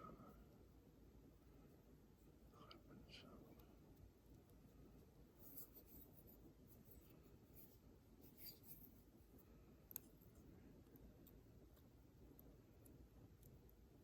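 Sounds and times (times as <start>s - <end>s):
small metal tool scraping: 8.3s - 8.9s.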